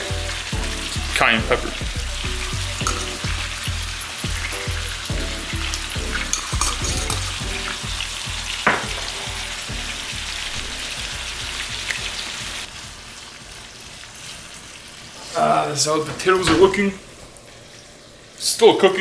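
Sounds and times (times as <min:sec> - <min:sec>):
deep bass background music: 0:00.0 - 0:14.0
ground beef sizzling in a pan: 0:00.0 - 0:19.0.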